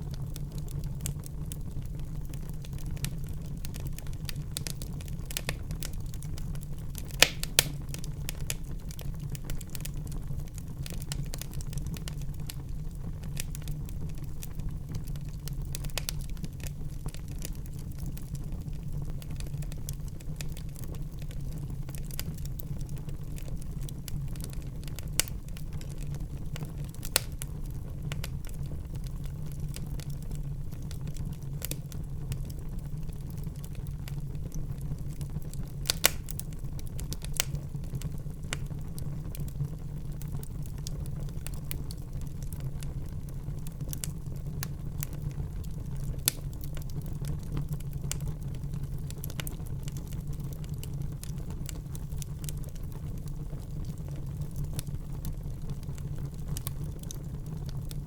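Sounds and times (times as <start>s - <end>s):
fire crackling: 0.0s - 58.0s
fire flames rumbling: 0.0s - 58.0s
sharp fire pops: 3.0s - 9.8s, 26.6s - 27.6s, 35.6s - 38.8s.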